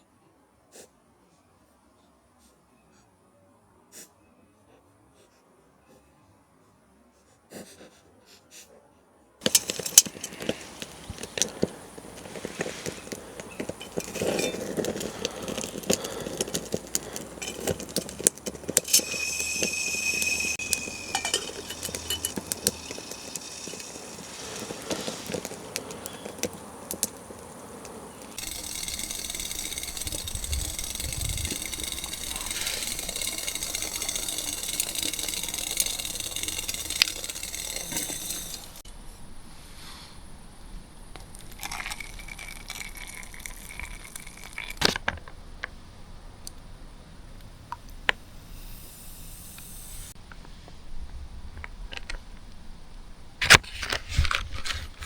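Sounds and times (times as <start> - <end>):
cooking gear clinking: 9.4 - 38.8, 41.2 - 45.2
camp stove burner hissing: 9.4 - 38.9, 41.2 - 44.9, 46.0 - 50.7.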